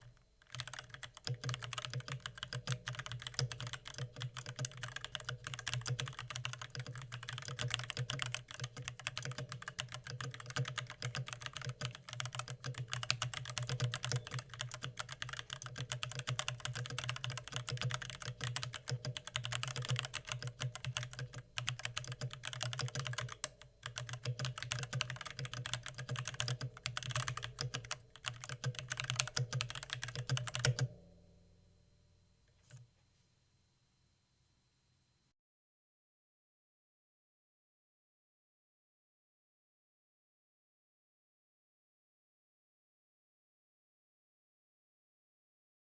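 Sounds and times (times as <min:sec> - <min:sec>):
fast typing on mechanical keyboard: 0:00.4 - 0:30.9.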